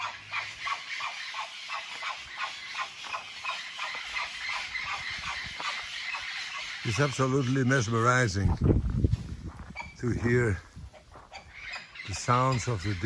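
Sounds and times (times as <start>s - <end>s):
parrots calling: 0.0s - 8.2s, 11.0s - 13.0s.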